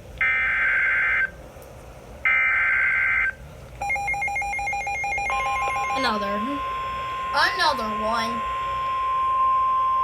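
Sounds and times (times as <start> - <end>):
steady warning alarm tone: 0.2 - 1.4, 2.2 - 10.0
fast two-tone beeping: 3.8 - 10.0.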